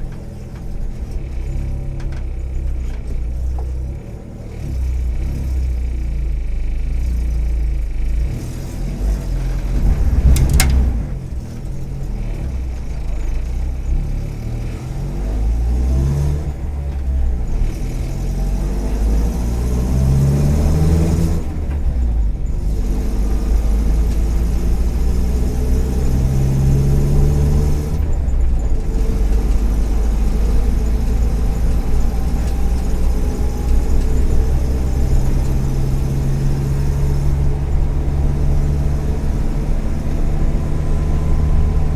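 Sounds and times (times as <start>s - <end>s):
car engine accelerating while driving: 0.0s - 41.9s
sharp click: 10.2s - 11.0s.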